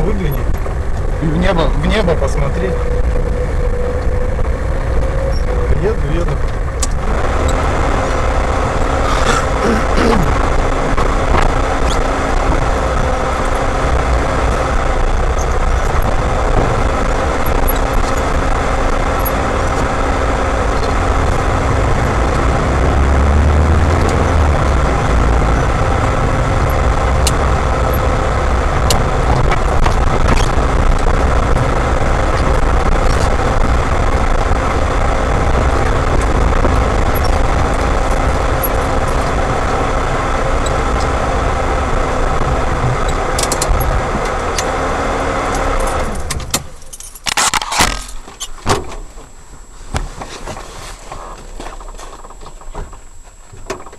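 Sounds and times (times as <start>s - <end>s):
car engine and tyre noise: 0.0s - 53.9s.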